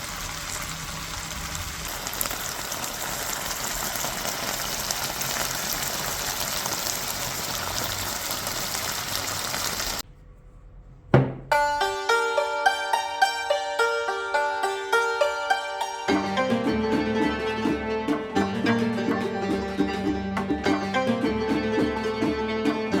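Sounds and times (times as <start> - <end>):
plucked-string music: 11.3 - 23.0.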